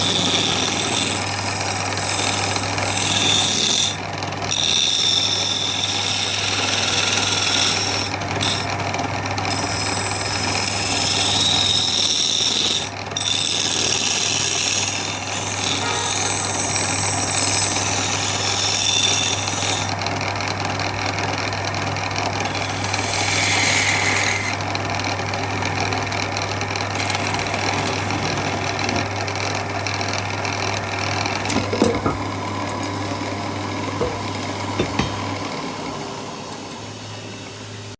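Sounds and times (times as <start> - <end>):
machine high whine: 0.0 - 8.8, 9.4 - 20.0.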